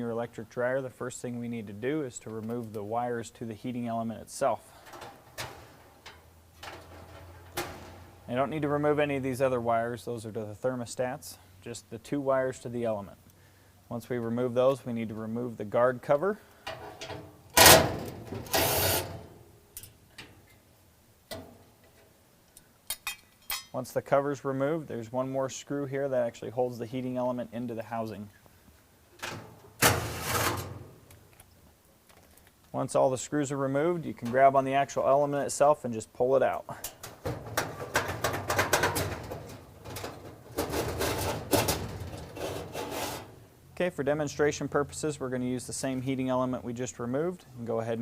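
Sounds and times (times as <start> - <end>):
metal scraping and clicking: 4.8 - 8.0
power tool removing screws: 17.6 - 19.3.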